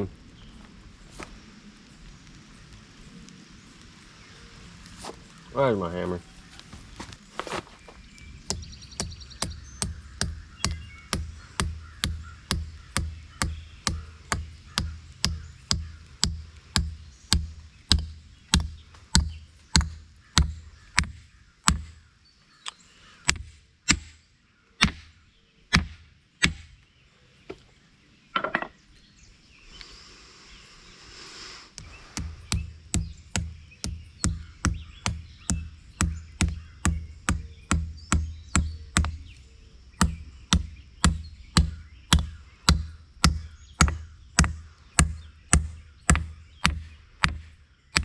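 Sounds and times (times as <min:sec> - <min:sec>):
hammer striking steel wedges: 0:32.2 - 0:39.2, 0:40.0 - 0:48.0.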